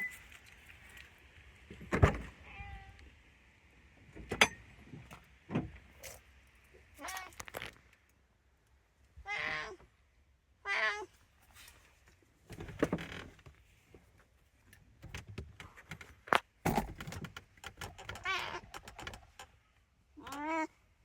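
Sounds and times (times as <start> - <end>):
cat meowing: 2.4 - 3.0, 9.2 - 9.8, 10.6 - 11.1, 20.2 - 20.8.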